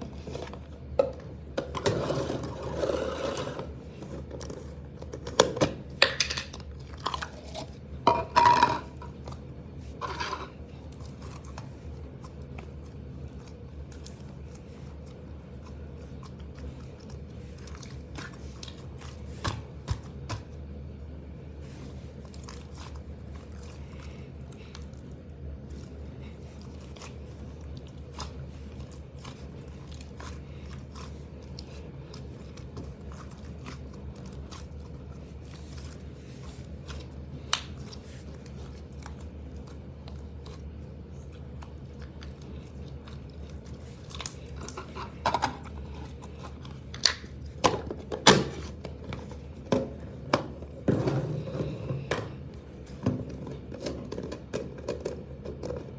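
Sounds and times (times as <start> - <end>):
steady low hum: 0.0 - 55.9
slime being squished: 10.7 - 20.6, 21.5 - 51.8.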